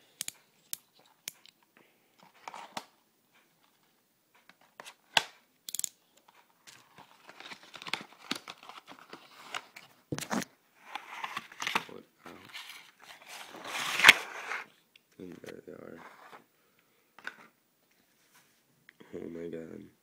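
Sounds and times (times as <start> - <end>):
packaging tearing and crinkling: 13.3 - 14.6.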